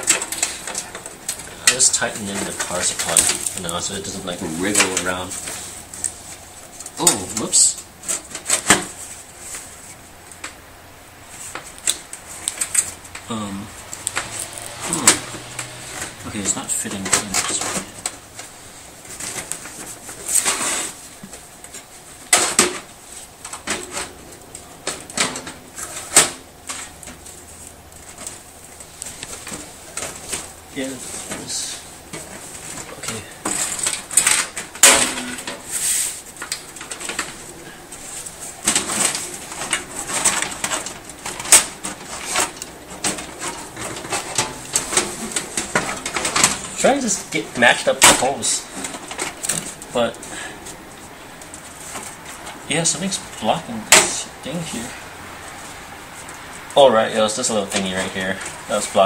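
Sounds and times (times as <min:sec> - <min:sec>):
metal and plastic scraping and knocking: 0:00.0 - 0:09.7, 0:36.4 - 0:50.8.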